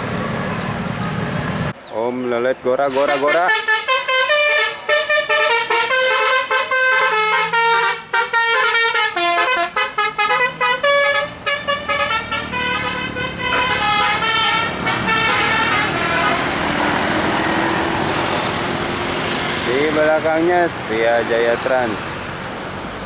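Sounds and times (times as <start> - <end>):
bus engine and tyre noise: 0.0 - 23.0
multi-tone bus horn tune: 2.9 - 17.2.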